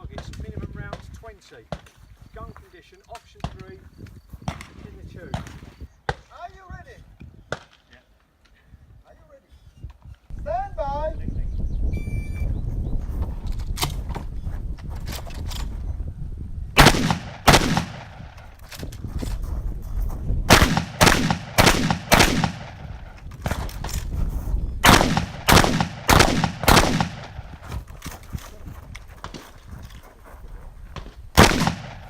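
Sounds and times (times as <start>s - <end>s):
shotgun shots: 16.8s - 18.5s, 20.5s - 23.7s, 24.8s - 27.6s, 31.4s - 32.0s.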